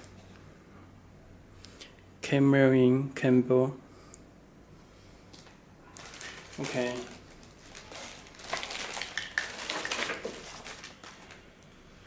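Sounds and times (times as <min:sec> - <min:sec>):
packaging crinkling and rustling: 0:05.3 - 0:11.5.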